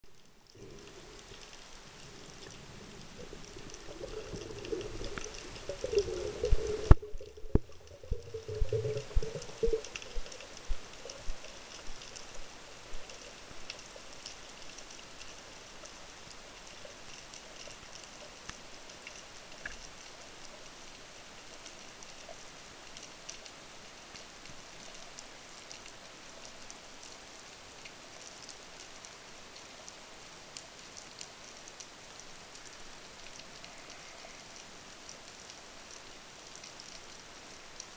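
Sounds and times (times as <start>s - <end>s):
faint hiss with crackles: 0.0s - 37.9s
underwater water rushing: 0.5s - 18.2s.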